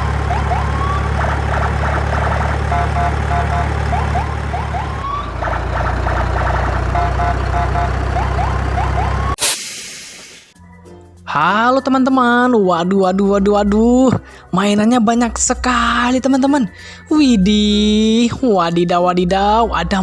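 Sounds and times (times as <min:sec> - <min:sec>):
electronic siren: 0:00.0 - 0:09.4.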